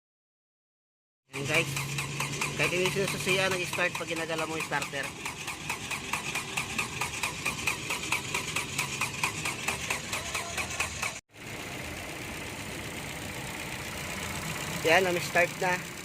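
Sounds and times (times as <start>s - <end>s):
car engine running: 1.3s - 16.0s
starter motor cranking engine: 1.3s - 16.0s.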